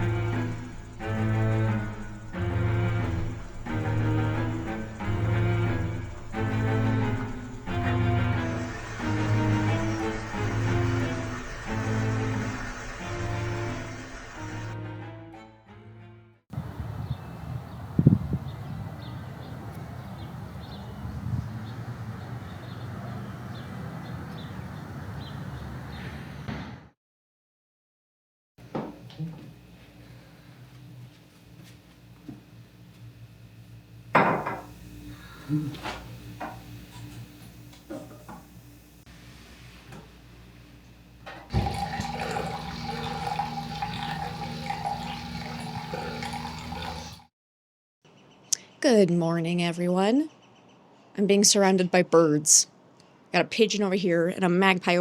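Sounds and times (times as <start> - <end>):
steady hum: 0.0 - 14.7
water rushing: 0.0 - 14.8, 41.5 - 47.3.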